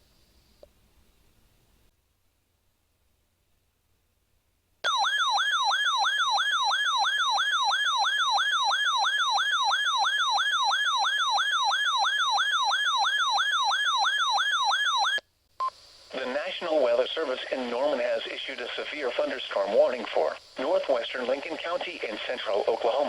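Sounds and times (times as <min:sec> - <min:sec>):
electronic yelp siren: 0:04.9 - 0:15.2.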